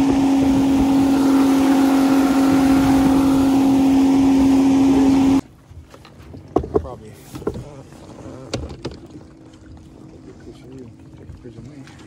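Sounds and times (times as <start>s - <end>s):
water wash: 0.0s - 5.4s
watercraft engine running: 0.0s - 12.0s.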